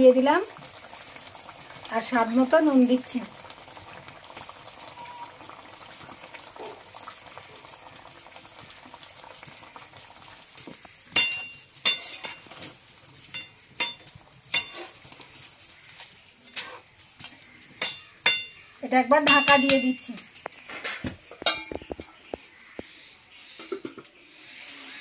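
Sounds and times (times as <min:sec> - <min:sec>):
pot bubbling: 0:00.0 - 0:25.0
metal spoon clinking on pot: 0:11.1 - 0:12.6, 0:13.3 - 0:15.0, 0:17.7 - 0:18.6, 0:19.2 - 0:20.2, 0:21.4 - 0:21.9.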